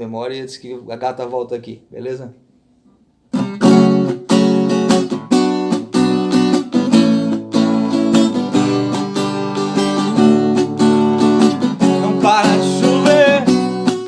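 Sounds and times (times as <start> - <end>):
acoustic guitar strumming chords: 3.4 - 14.0.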